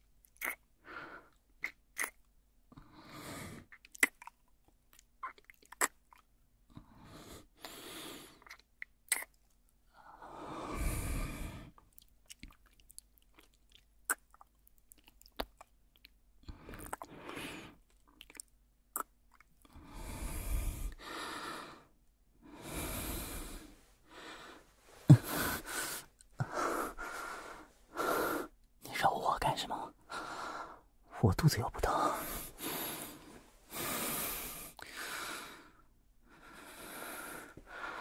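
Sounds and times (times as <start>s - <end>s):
man breathing slowly: 9.9s - 11.8s, 19.6s - 28.6s, 29.9s - 30.9s, 31.8s - 38.0s.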